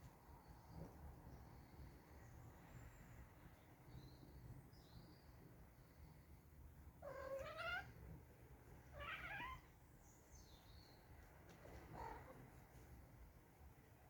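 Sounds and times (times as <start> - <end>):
cat meowing and yowling: 7.0 - 8.0, 8.9 - 9.7.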